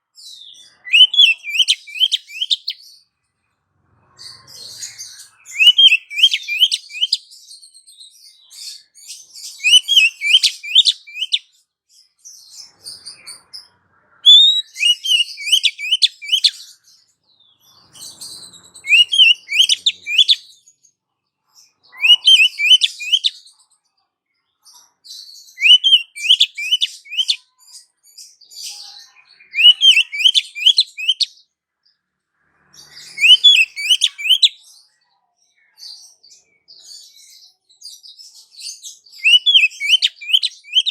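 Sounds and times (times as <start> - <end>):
bird chirping in short bursts: 0.9 - 2.8, 5.4 - 7.2, 14.3 - 16.6, 17.9 - 20.5, 25.6 - 27.4, 32.9 - 34.6, 39.2 - 40.9.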